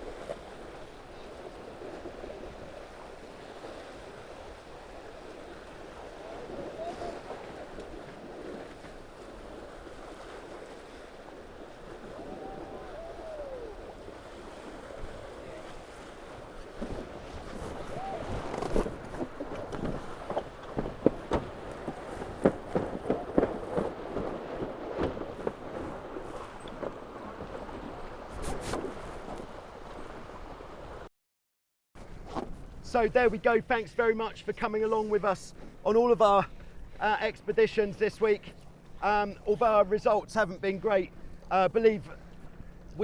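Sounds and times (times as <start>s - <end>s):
water rushing along boat hulls: 0.0s - 31.1s, 32.0s - 43.0s
wind on microphone: 12.0s - 29.4s
sharp irregular knocks and clatters: 18.7s - 25.8s.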